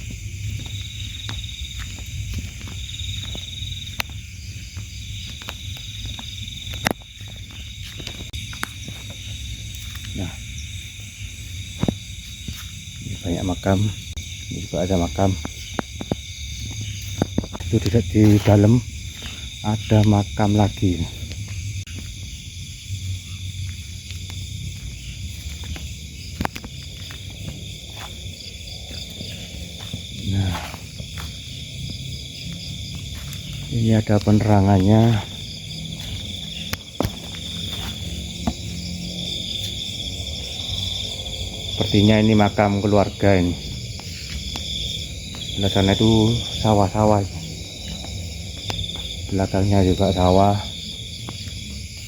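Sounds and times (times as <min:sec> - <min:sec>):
crickets chirping: 0:00.0 - 0:52.0
insects and frogs trilling: 0:00.0 - 0:52.0.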